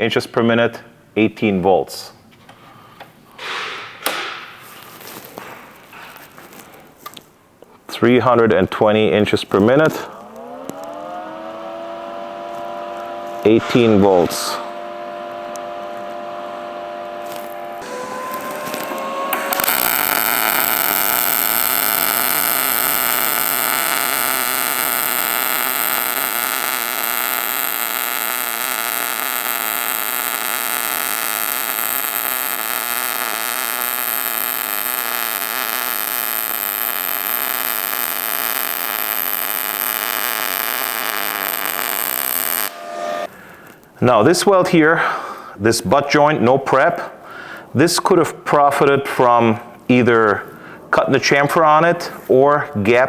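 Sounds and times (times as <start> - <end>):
welding arc crackling sizzle: 3.4 - 7.4, 8.7 - 44.7
welder hum: 9.4 - 45.1.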